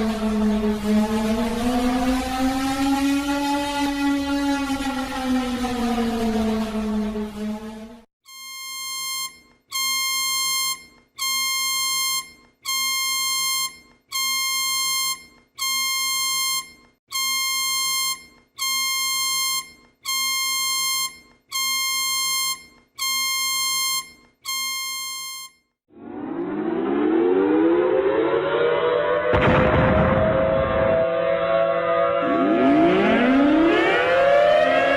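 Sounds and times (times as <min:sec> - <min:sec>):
buzzy emergency alarm beeps: 0:08.2 - 0:28.8.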